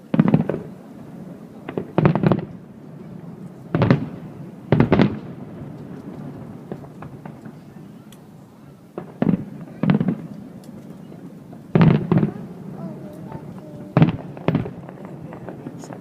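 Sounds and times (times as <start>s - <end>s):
fireworks bangs: 0.0s - 16.0s
faint firework pops: 1.6s - 2.6s, 3.7s - 8.3s, 9.0s - 11.0s, 11.7s - 12.4s, 13.0s - 16.0s.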